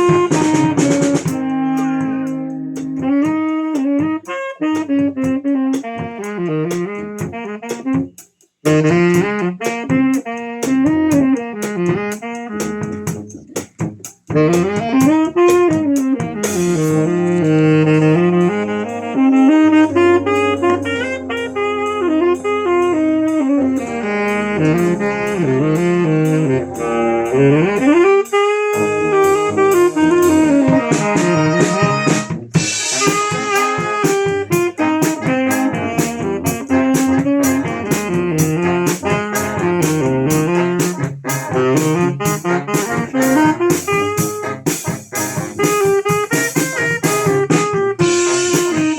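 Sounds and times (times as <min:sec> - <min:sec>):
brass band playing: 0:00.0 - 0:48.9
drum kit with cymbal hits: 0:00.0 - 0:48.9
saxophone melody: 0:00.0 - 0:48.9
horn sliding upward in pitch: 0:14.4 - 0:44.9.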